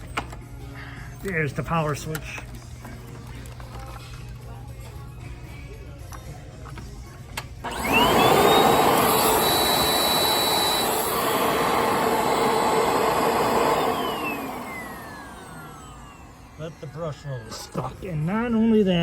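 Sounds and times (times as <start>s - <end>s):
vacuum cleaner motor whine: 7.6s - 19.0s.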